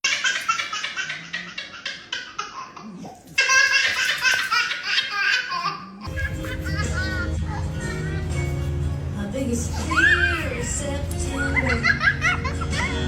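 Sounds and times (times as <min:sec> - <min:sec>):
baby laughing: 0:00.0 - 0:08.3, 0:11.3 - 0:13.0.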